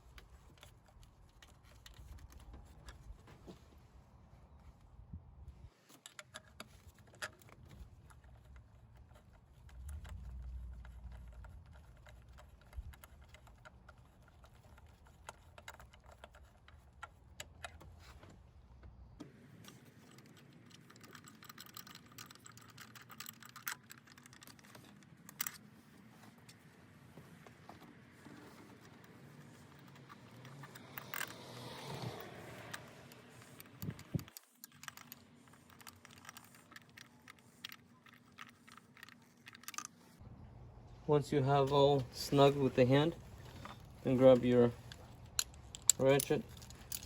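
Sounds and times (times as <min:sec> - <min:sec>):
small metal parts clicking: 0:05.9 - 0:17.8, 0:19.7 - 0:25.6, 0:29.4 - 0:40.2, 0:42.4 - 0:47.0.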